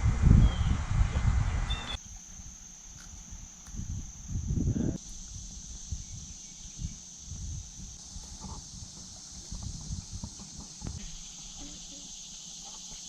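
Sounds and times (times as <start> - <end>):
insects buzzing: 1.7 - 13.0.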